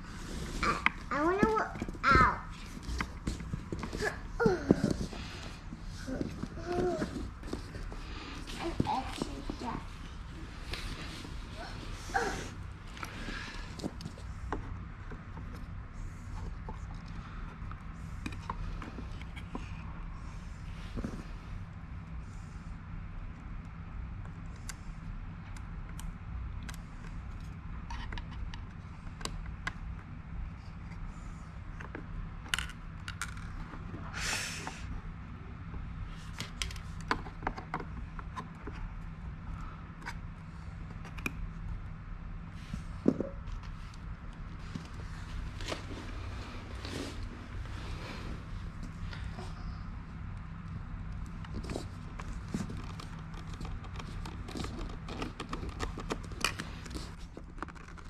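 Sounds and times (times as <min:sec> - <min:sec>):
rustling scrape: 0:00.0 - 0:01.2, 0:44.6 - 0:49.6
steady low hum: 0:00.0 - 0:58.0.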